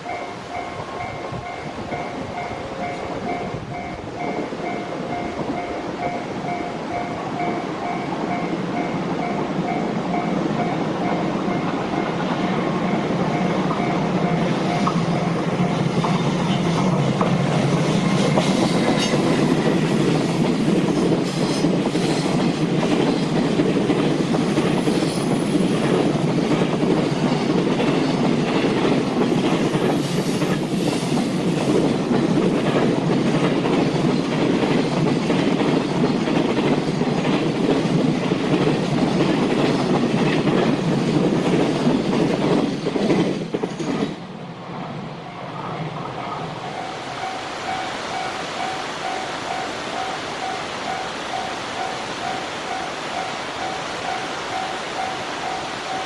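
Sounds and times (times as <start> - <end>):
train wheels clicking over rail joints: 0.0 - 44.4.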